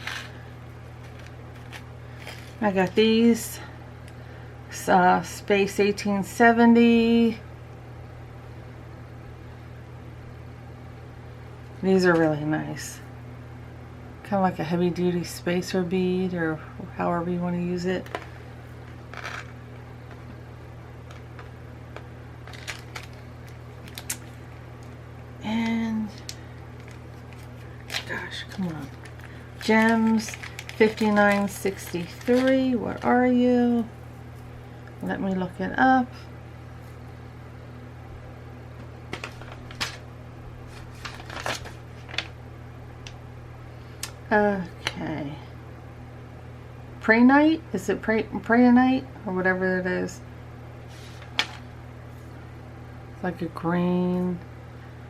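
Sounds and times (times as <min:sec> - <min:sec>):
bead packet rustling: 0:00.0 - 0:02.6, 0:18.1 - 0:19.6, 0:22.4 - 0:25.0, 0:26.2 - 0:33.1
steady low hum: 0:00.0 - 0:55.0.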